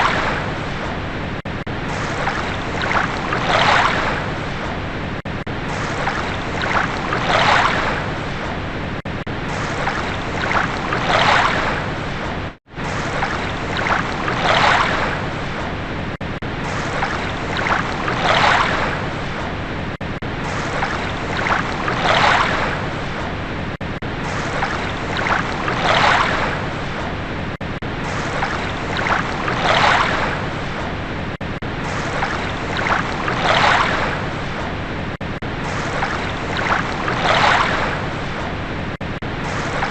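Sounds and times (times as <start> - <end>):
ocean waves washing in: 0.0 - 39.9.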